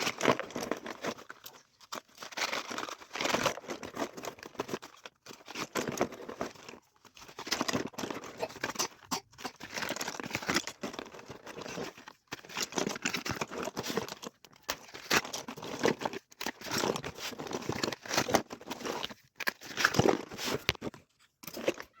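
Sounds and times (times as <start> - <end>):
packaging crinkling and rustling: 0.0 - 22.0.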